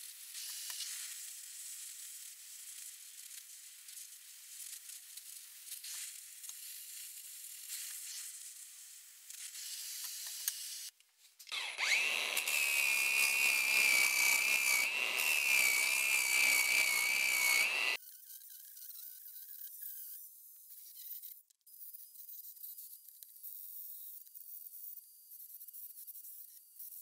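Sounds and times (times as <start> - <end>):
power tool whining: 11.5 - 18.0.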